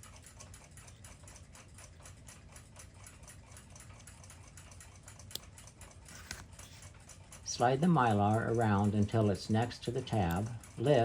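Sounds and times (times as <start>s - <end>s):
clock ticking: 7.4s - 11.0s
sharp clock click: 8.1s - 11.0s.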